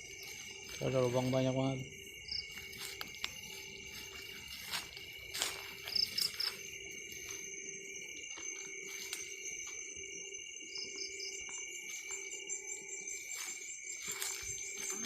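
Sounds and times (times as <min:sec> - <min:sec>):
crickets trilling: 0:00.0 - 0:15.0.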